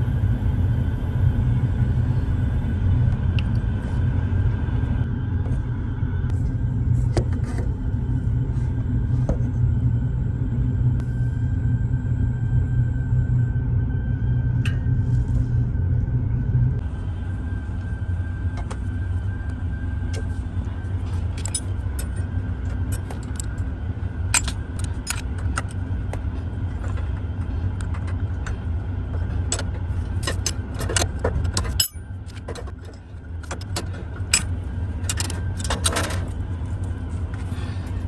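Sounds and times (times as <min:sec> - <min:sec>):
steady low rumble: 0:00.0 - 0:38.0
metal tools clinking and tapping: 0:21.4 - 0:22.2, 0:24.3 - 0:25.8, 0:29.4 - 0:36.3.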